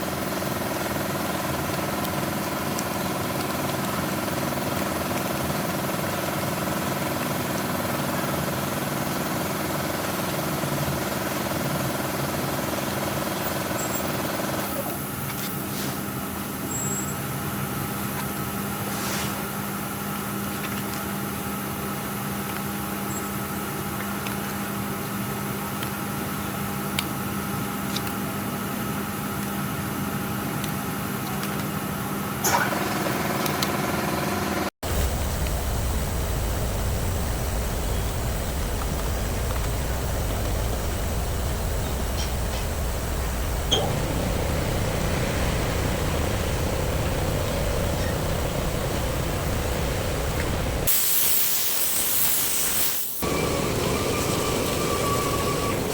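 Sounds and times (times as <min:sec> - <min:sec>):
machine humming with tones: 0:19.6 - 0:51.1, 0:53.2 - 0:55.9.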